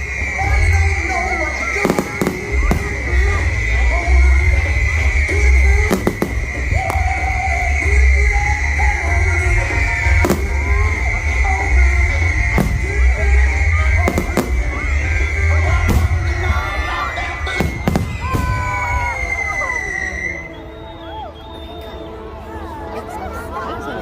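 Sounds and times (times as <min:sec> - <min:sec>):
low fireworks rumble: 0:00.0 - 0:20.0
music playing: 0:00.0 - 0:24.0
firework bangs: 0:01.6 - 0:03.8, 0:04.5 - 0:07.3, 0:09.8 - 0:11.1, 0:12.3 - 0:16.8, 0:17.4 - 0:19.2.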